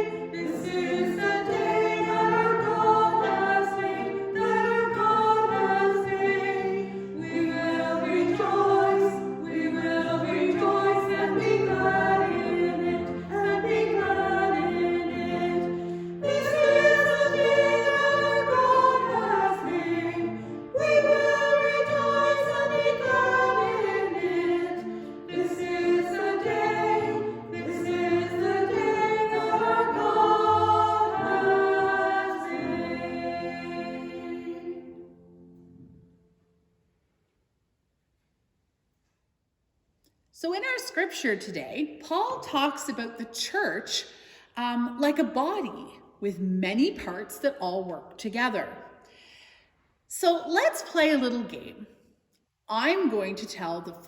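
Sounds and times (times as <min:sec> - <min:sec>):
choir singing a hymn: 0:00.0 - 0:35.4.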